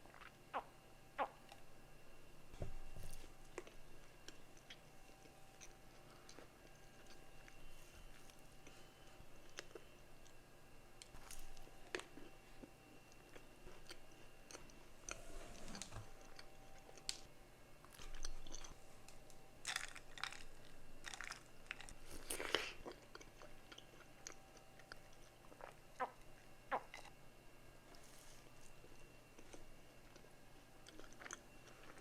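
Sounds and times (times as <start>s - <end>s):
person chewing crunchy food: 0.0s - 1.7s, 2.7s - 10.4s, 11.0s - 15.2s, 16.1s - 27.2s, 27.8s - 32.0s.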